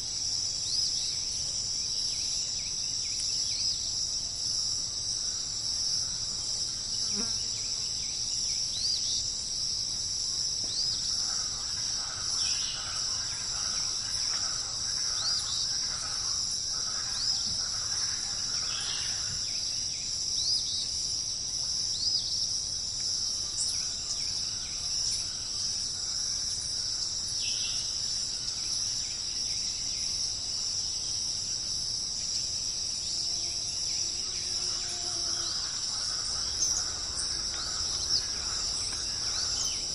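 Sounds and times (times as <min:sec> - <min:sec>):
insects shrilling: 0:33.2 - 0:39.9.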